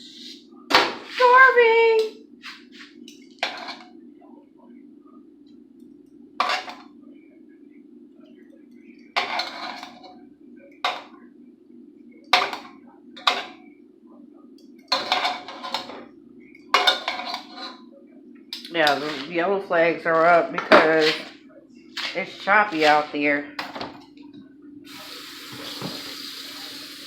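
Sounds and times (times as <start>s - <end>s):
steady low hum: 0.0s - 25.0s
dishes and utensils clinking: 6.4s - 6.8s, 9.2s - 10.2s, 14.9s - 16.1s, 16.7s - 17.9s.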